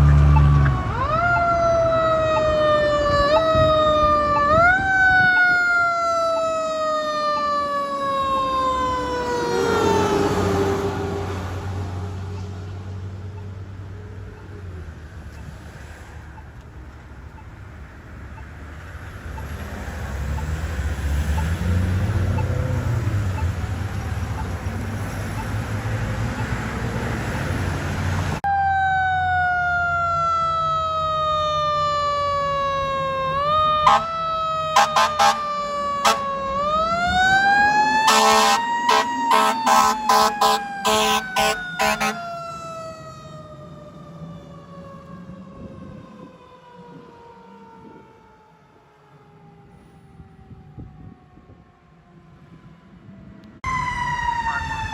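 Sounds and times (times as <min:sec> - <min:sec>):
fire truck siren: 0:00.0 - 0:16.6, 0:17.2 - 0:54.9
engine and traffic rumble: 0:00.0 - 0:54.9
air horn blasts: 0:33.8 - 0:36.3, 0:38.0 - 0:42.3.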